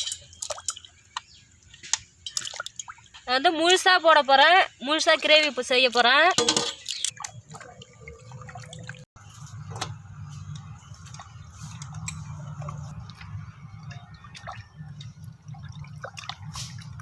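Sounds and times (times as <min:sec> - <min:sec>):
small splashes: 0:00.0 - 0:03.2, 0:12.5 - 0:17.0
water sloshing and dripping: 0:00.0 - 0:04.1, 0:05.0 - 0:17.0.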